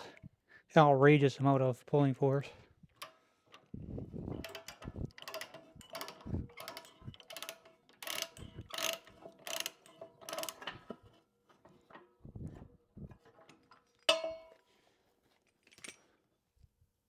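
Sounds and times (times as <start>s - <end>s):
chain binder ratchet clicking: 2.8s - 11.2s.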